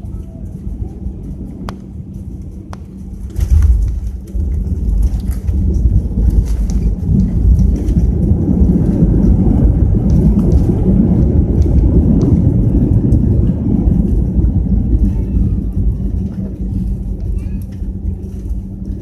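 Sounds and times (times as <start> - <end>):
airliner engines rumbling: 0.0 - 19.0
wheels rolling on runway: 0.0 - 19.0.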